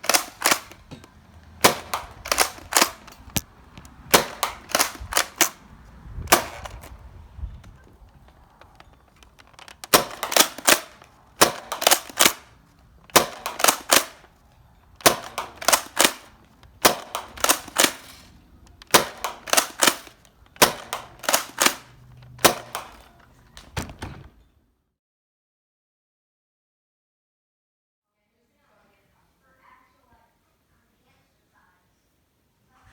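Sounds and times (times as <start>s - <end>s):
toy blaster plastic clacks: 0.0s - 5.6s, 6.2s - 7.0s, 7.6s - 14.3s, 15.0s - 23.8s.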